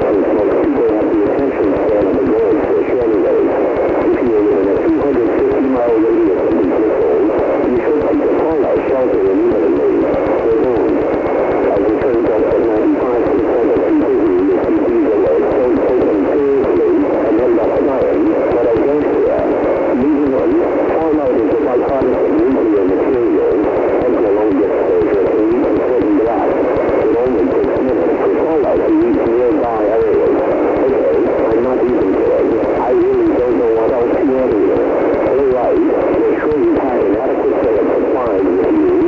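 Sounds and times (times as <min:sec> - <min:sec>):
garbled radio voice: 0:00.0 - 0:39.0.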